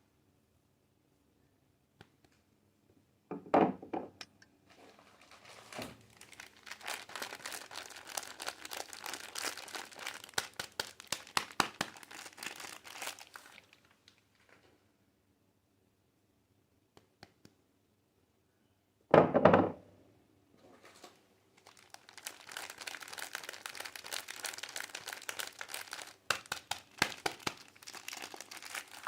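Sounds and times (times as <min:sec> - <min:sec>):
soap wrapper crinkling: 0:04.8 - 0:14.6, 0:21.0 - 0:29.0.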